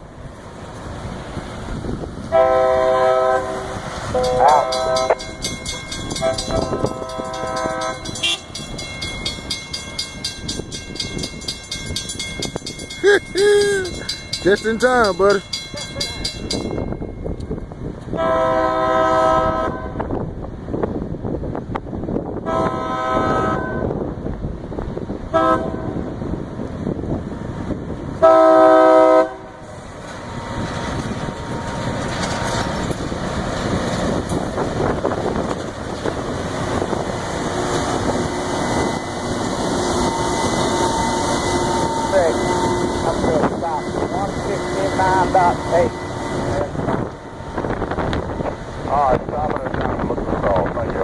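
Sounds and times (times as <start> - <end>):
rail grinder rumbling on rails: 0.0 - 51.0
rail grinder horn blasts: 2.3 - 8.8, 18.1 - 20.2, 22.4 - 24.0, 25.2 - 26.2, 28.2 - 30.7, 36.8 - 48.4.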